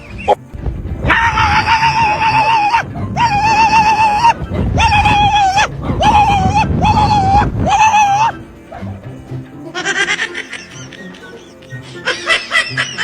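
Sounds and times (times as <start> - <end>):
animal wavering cries: 1.0 - 9.0.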